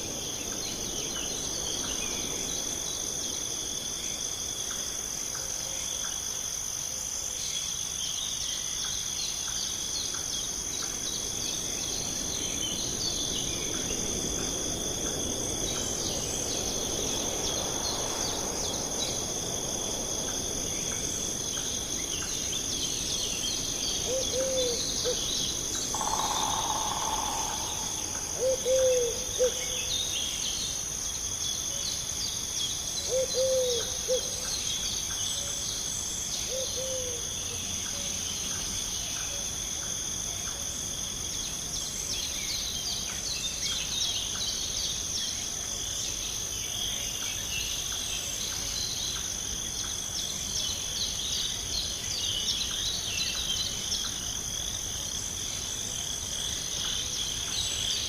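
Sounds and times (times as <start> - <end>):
crickets and insects chirring: 0.0 - 58.0
bird hooting: 25.9 - 29.8.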